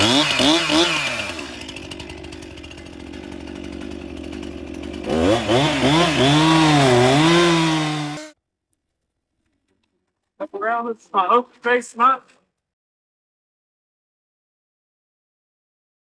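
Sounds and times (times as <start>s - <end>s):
chainsaw revving and cutting: 0.0s - 8.4s.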